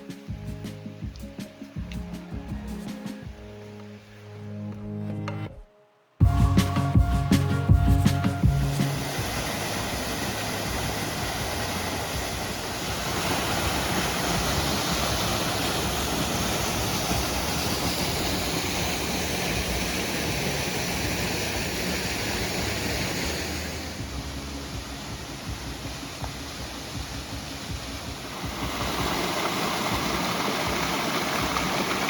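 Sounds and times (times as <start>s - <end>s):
flowing water rushing: 8.4s - 32.0s.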